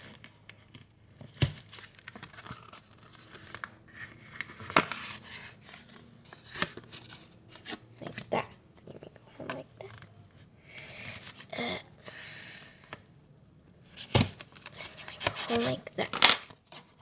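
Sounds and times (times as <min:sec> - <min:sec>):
cardboard scraping and crinkling: 0:01.2 - 0:08.2, 0:14.0 - 0:15.9
scissors snipping cardboard: 0:01.4 - 0:01.8, 0:14.0 - 0:14.4.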